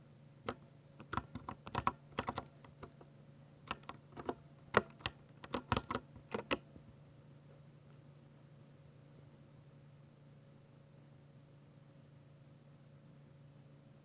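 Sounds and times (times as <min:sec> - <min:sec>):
faint steady hum: 0:00.0 - 0:14.0
mechanical keyboard keystrokes: 0:00.5 - 0:03.0, 0:03.7 - 0:06.7.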